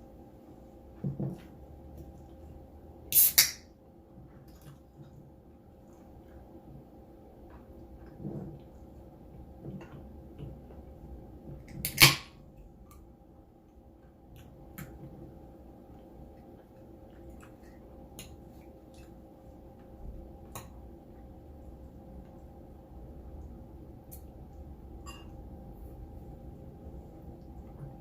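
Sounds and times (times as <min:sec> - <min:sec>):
soft chewing: 0:04.1 - 0:11.7, 0:12.5 - 0:28.0.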